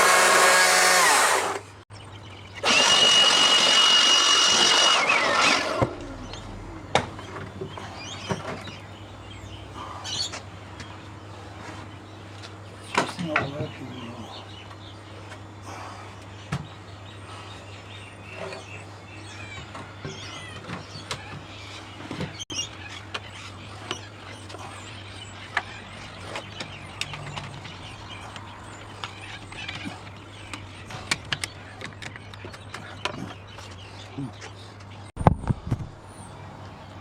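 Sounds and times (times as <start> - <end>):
low steady hum: 5.4 - 22.0.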